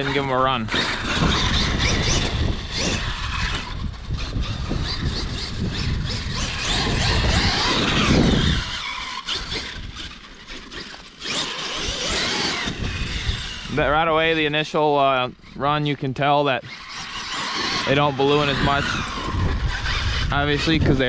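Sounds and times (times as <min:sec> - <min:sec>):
tires rumbling and knocking: 0:00.0 - 0:14.6
electric motor whining: 0:00.0 - 0:21.0.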